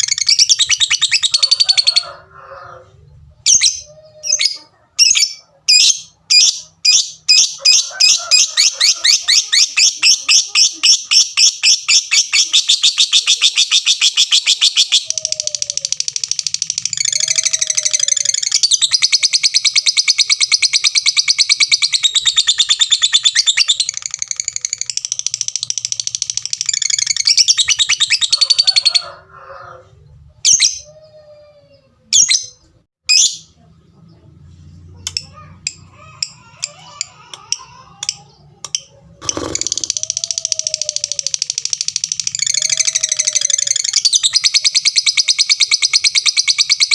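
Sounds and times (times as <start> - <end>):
lovebird chattering song: 0.0 - 2.1, 3.4 - 29.1, 35.1 - 46.9
lovebird ticking calls: 37.3 - 46.9.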